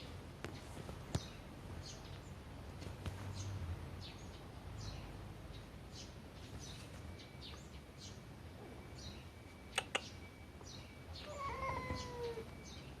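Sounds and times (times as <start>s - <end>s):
sharp clicks: 9.8s - 10.1s
cat meowing: 11.2s - 12.5s.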